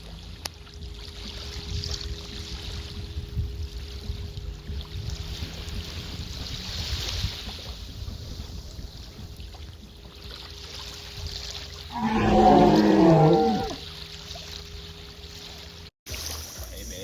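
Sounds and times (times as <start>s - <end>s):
wind and water noise: 0.0s - 17.0s
boat motor hum: 7.5s - 15.9s.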